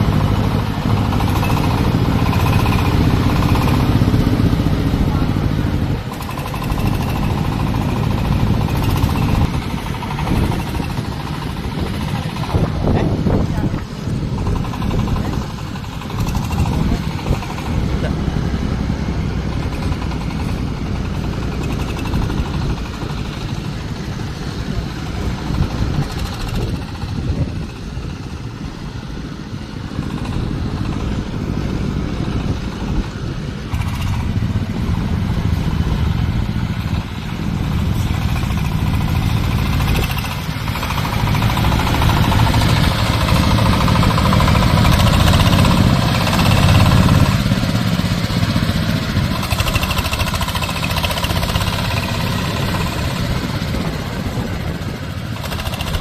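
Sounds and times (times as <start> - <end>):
corn sheller engine running: 0.0 - 56.0.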